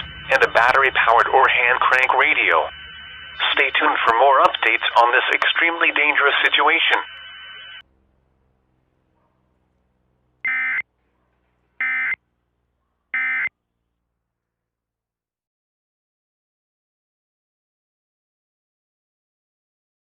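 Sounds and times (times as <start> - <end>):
digital data tone bursts: 0.0 - 7.8, 10.5 - 10.8, 11.8 - 12.2.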